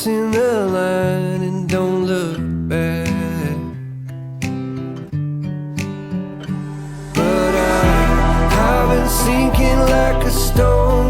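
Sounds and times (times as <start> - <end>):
strummed acoustic guitar: 0.0 - 11.0
bass notes: 6.4 - 11.0
person singing: 6.6 - 11.0.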